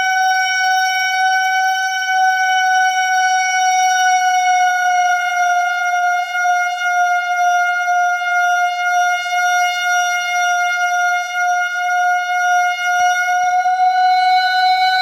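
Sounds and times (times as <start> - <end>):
eerie drone tone: 13.4 - 15.0.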